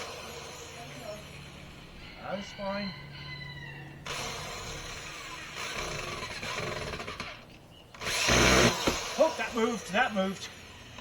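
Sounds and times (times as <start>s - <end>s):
power drill driving screws: 4.1s - 9.6s.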